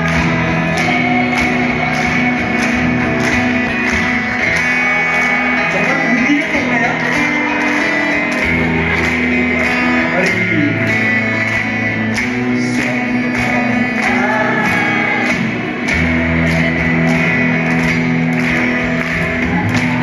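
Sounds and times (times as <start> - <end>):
live band with guitar: 0.0 - 20.0
person singing: 4.4 - 17.7.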